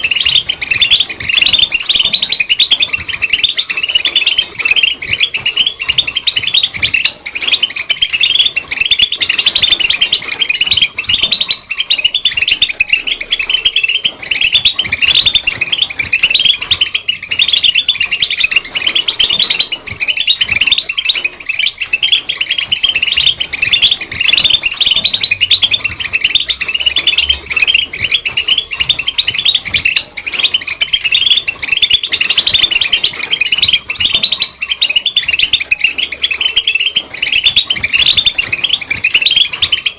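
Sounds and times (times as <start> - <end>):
goldfinch singing: 0.0 - 39.9.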